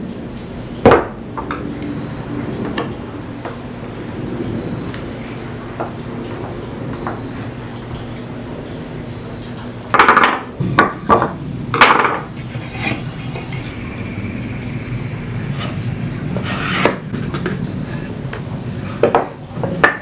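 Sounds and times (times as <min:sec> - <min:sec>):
steady low hum: 0:00.0 - 0:20.0
wood and metal knocks: 0:10.0 - 0:12.3.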